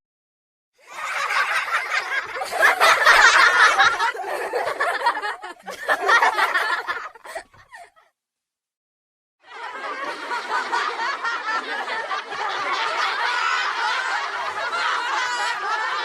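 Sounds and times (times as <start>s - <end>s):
person laughing: 2.2s - 8.0s.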